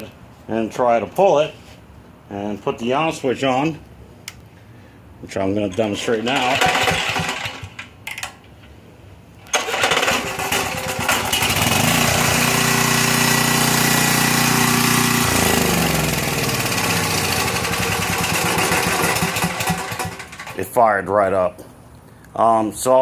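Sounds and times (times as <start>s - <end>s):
generator engine pull-started and running: 5.7s - 8.6s, 9.4s - 20.8s.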